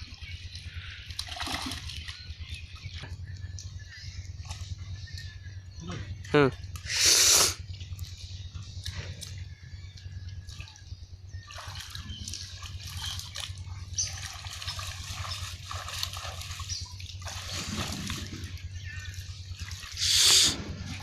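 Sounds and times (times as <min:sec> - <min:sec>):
shallow water splashing: 0:00.0 - 0:05.5, 0:10.3 - 0:21.0
steady low hum: 0:00.0 - 0:21.0.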